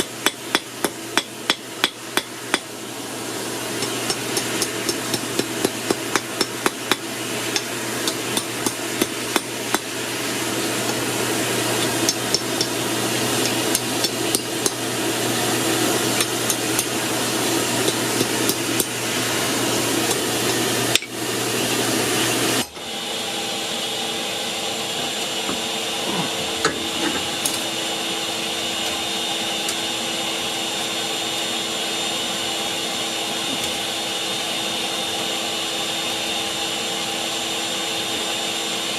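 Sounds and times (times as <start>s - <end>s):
hammer striking hot steel: 0.0s - 2.7s, 3.8s - 9.9s, 11.8s - 12.8s, 13.4s - 14.8s, 16.2s - 17.0s, 17.8s - 18.9s
air blower whirring: 0.0s - 38.9s.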